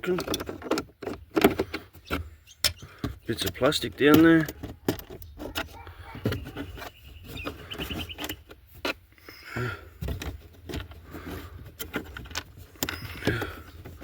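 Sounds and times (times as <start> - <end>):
hard plastic clicking and rubbing: 0.0 - 14.0.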